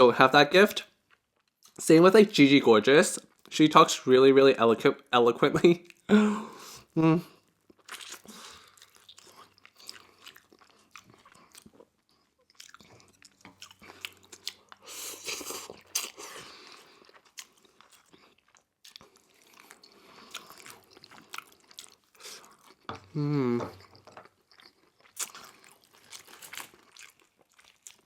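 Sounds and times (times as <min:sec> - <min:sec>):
person chewing crunchy food: 0:07.6 - 0:28.0.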